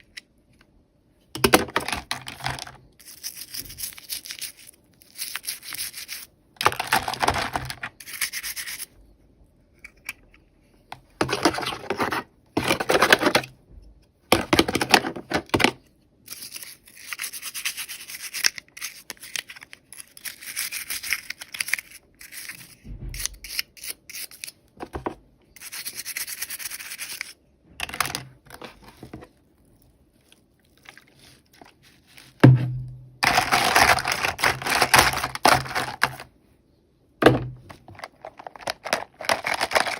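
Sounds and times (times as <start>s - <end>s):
packaging rustling: 33.2s - 36.3s, 37.6s - 39.9s.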